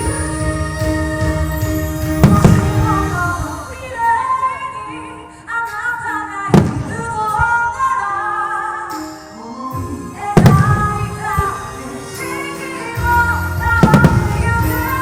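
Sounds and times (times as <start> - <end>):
pop song with woman singing: 0.1 - 15.0
firework shells booming: 2.2 - 3.6, 6.5 - 7.6, 10.4 - 11.8, 13.6 - 15.0.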